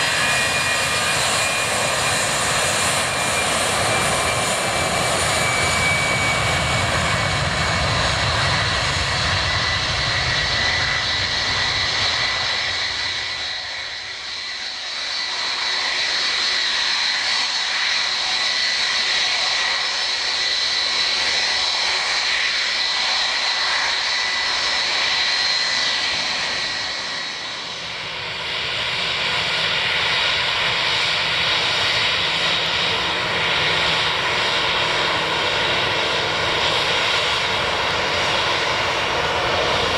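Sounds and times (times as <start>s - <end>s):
jet engines whining at take-off: 0.0s - 39.9s.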